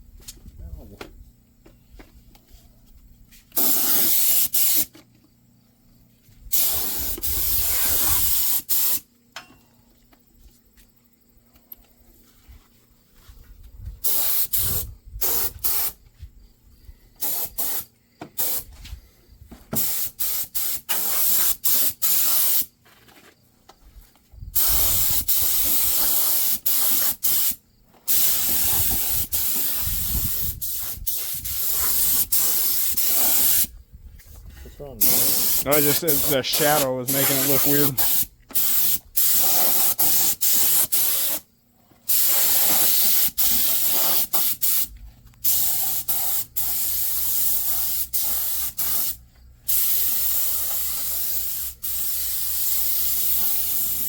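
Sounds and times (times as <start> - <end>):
spray gun hissing: 3.6 - 4.9, 6.5 - 9.0, 14.0 - 15.9, 17.2 - 17.8, 19.8 - 22.7, 24.6 - 33.7, 35.0 - 41.4, 42.1 - 54.0.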